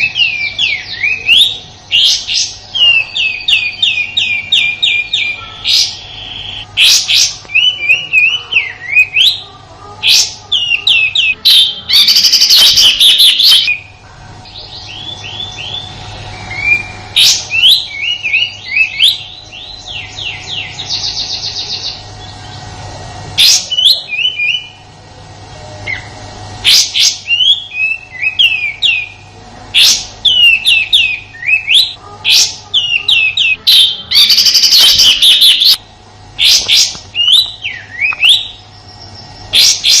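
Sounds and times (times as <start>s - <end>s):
songbird whistling song: 0.0s - 9.4s, 10.0s - 22.6s, 23.4s - 24.8s, 25.9s - 29.2s, 29.8s - 35.8s, 36.4s - 40.0s
faint steady hum: 0.0s - 40.0s
bird rattling trill: 10.0s - 13.9s, 29.8s - 35.8s, 36.4s - 40.0s
harsh bird call bursts: 10.0s - 13.9s, 29.8s - 35.8s.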